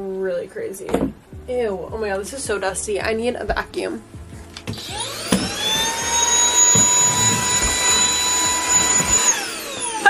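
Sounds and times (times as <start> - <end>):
vacuum cleaner motor whine: 4.7 - 10.0.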